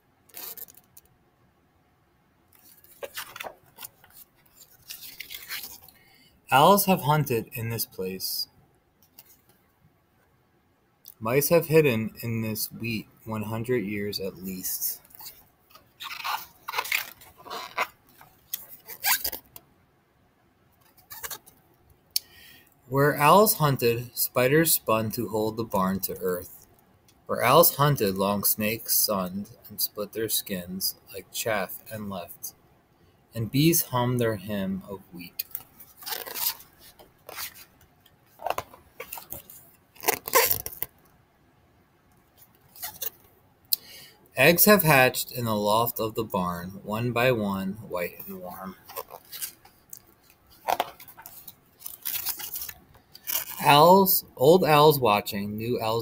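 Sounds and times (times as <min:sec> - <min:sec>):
paper page turning: 0:02.6 - 0:06.0, 0:15.0 - 0:19.6, 0:35.4 - 0:37.8, 0:38.4 - 0:41.0, 0:48.7 - 0:53.8.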